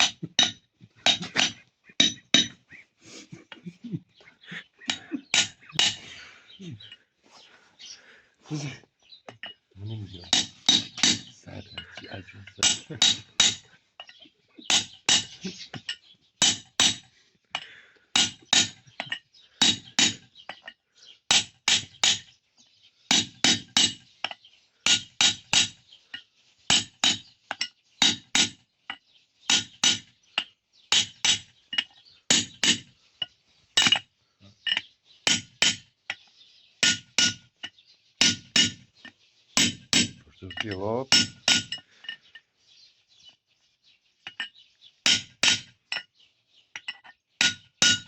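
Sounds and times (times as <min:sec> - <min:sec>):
sharp metallic clinking: 0:09.3 - 0:17.0, 0:33.8 - 0:36.2, 0:36.8 - 0:42.5, 0:44.2 - 0:46.1.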